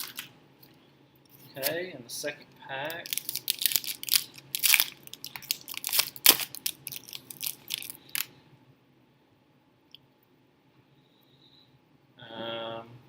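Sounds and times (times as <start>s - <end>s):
wrapper tearing and crinkling: 0.0s - 0.3s, 2.9s - 8.3s.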